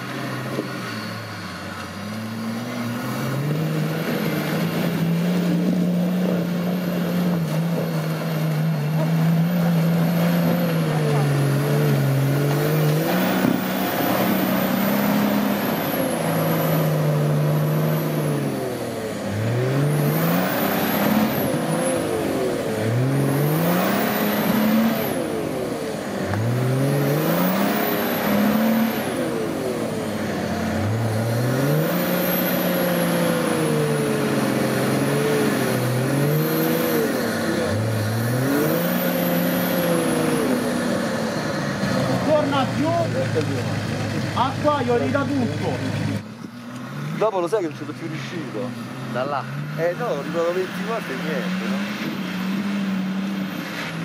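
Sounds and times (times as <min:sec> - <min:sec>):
off-road vehicle engine revving: 0:00.0 - 0:54.0.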